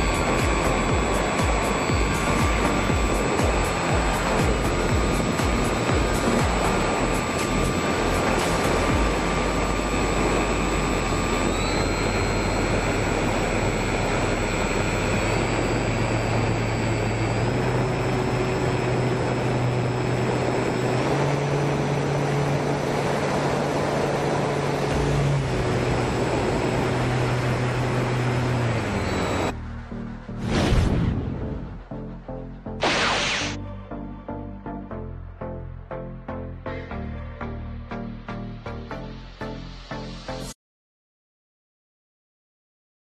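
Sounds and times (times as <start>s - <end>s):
model airplane motor whine: 0.0s - 29.6s.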